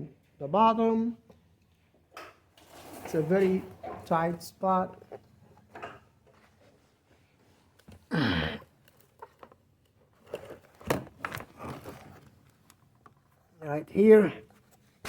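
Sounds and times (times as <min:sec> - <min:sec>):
short grunt: 0:08.1 - 0:08.7.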